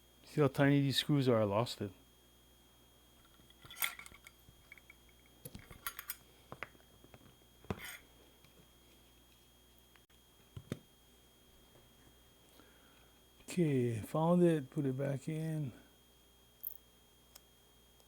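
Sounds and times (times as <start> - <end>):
small parts clicking and tapping: 3.2 - 8.6, 16.6 - 17.5.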